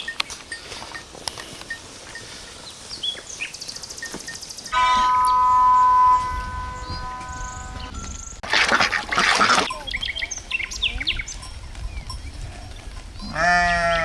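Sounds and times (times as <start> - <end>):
small birds chirping: 0.0 - 8.4, 9.1 - 14.0
sheep bleating: 13.2 - 14.0.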